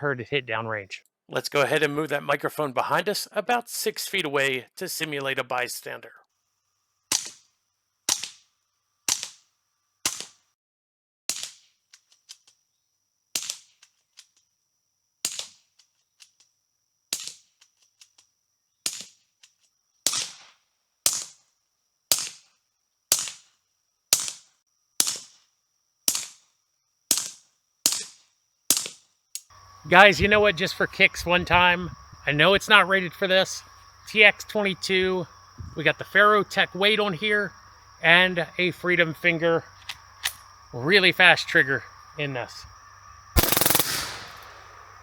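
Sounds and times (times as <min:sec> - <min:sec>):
suppressed gunshots: 0:43.4 - 0:44.9.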